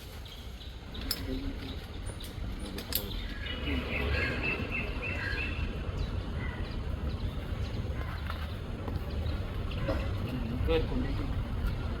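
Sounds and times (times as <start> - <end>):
bird chirping: 0.0 - 10.4
low outdoor rumble: 1.9 - 12.0.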